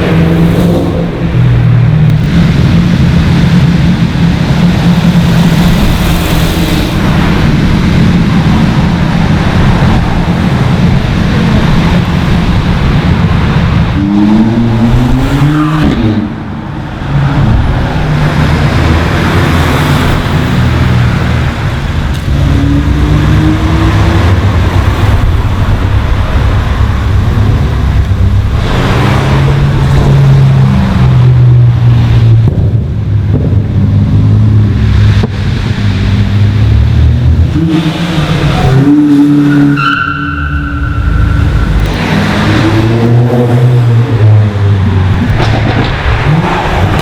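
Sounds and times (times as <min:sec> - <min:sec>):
loud cars revving past: 0:00.0 - 0:32.5, 0:33.6 - 0:47.0
steady tone: 0:38.5 - 0:45.0.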